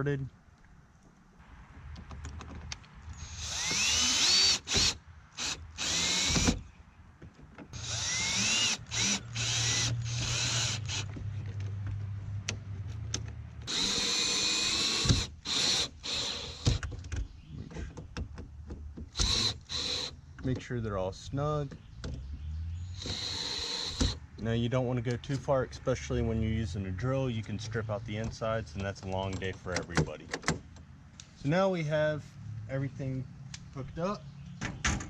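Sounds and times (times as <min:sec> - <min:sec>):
power drill driving bolts: 0:03.1 - 0:06.6, 0:07.7 - 0:11.2, 0:13.6 - 0:16.9, 0:19.1 - 0:20.2, 0:22.9 - 0:24.2.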